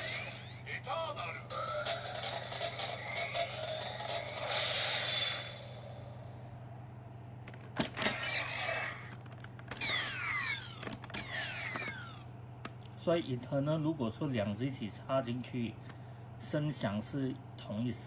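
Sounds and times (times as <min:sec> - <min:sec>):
toy belt electronic sound effects: 0:00.0 - 0:06.2, 0:08.0 - 0:09.1
steady low hum: 0:00.0 - 0:18.0.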